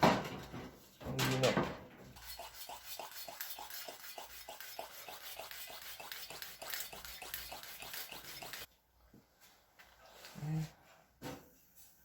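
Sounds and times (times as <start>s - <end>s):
hand pump plunger strokes: 2.2s - 8.7s.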